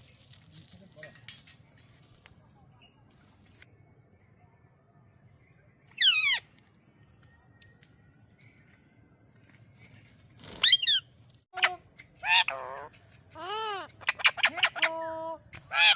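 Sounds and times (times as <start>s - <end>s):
parrot calls: 6.0s - 6.4s, 11.6s - 15.1s.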